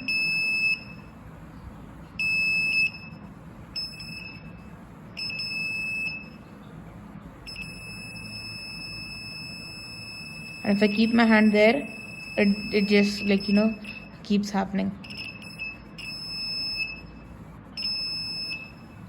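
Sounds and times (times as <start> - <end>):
electronic buzzer beeping: 0.0 - 1.1, 2.2 - 3.2, 3.8 - 4.6, 5.2 - 6.4, 7.5 - 14.2, 15.0 - 17.2, 17.8 - 19.0.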